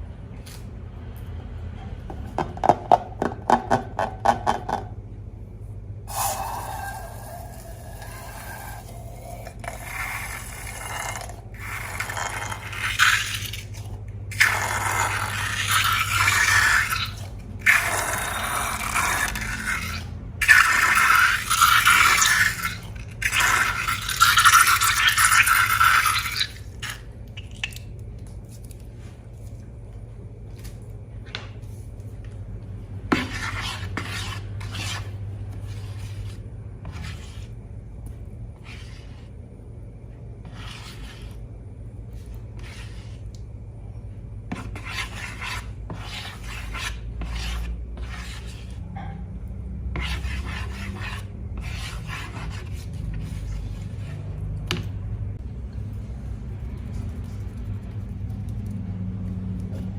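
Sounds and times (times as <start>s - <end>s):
steady low hum: 0.0s - 59.9s
wet slime squelching: 6.1s - 29.6s.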